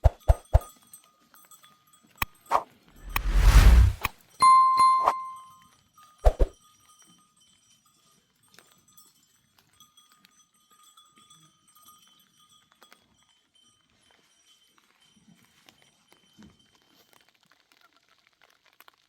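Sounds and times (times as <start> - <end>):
animal bells ringing: 4.4 - 5.6, 6.6 - 15.2.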